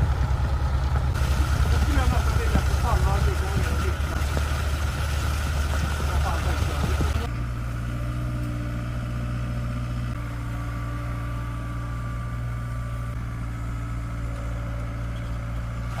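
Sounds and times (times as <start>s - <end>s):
heavy machine engine idling: 0.0s - 8.2s.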